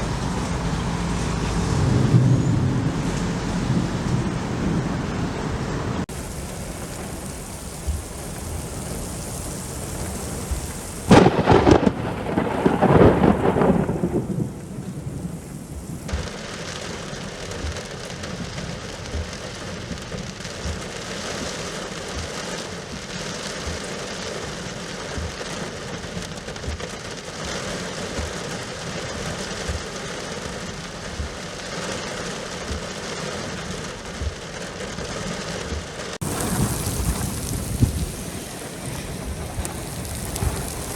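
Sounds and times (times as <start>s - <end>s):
thunderclap rumbling: 0.0s - 21.0s, 35.0s - 40.9s
steady rain: 0.0s - 40.9s.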